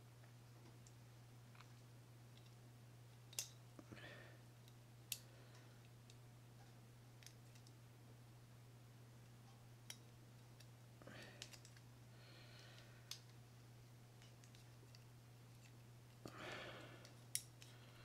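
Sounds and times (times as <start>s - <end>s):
low steady hum: 0.0s - 18.0s
small metal parts clicking: 7.2s - 7.8s, 11.3s - 11.8s, 17.0s - 17.8s.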